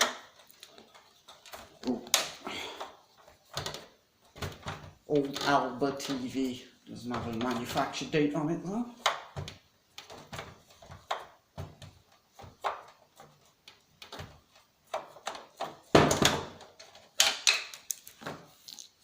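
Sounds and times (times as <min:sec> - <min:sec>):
plastic case and tools clattering: 0:02.8 - 0:08.1, 0:09.0 - 0:18.6.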